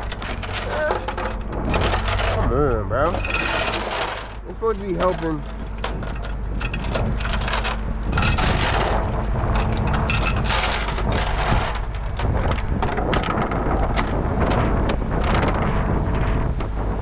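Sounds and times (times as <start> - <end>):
ringing metallic clinks: 0.0 - 2.0
chains clanking: 0.0 - 14.6
steady low rumble: 0.0 - 17.0.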